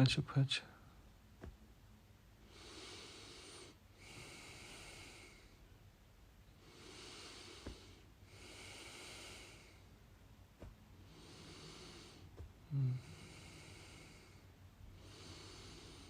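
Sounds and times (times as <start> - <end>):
soft tap: 1.4 - 1.6, 10.6 - 10.8
slow deep breathing: 2.4 - 5.8, 6.4 - 10.0, 10.6 - 16.0.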